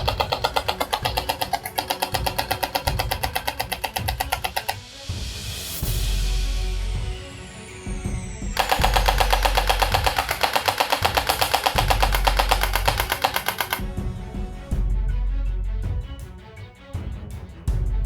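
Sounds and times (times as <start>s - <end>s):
gel blaster rapid firing: 0.0s - 4.8s, 8.6s - 13.8s
background music: 0.0s - 18.0s.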